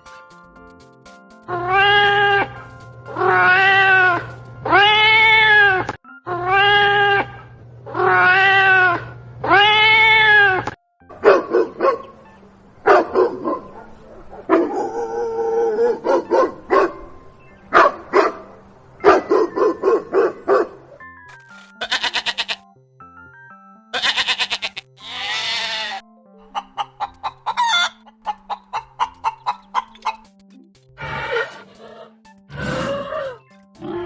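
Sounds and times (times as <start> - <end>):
dog barking: 11.2 - 12.2, 12.8 - 17.1, 17.7 - 20.8
cat meowing: 24.0 - 26.0.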